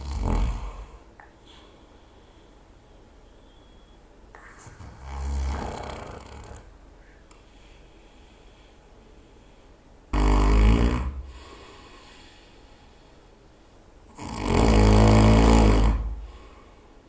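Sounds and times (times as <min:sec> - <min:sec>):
person snoring loudly: 0:00.0 - 0:01.0, 0:04.8 - 0:06.7, 0:10.1 - 0:11.6, 0:14.1 - 0:16.4.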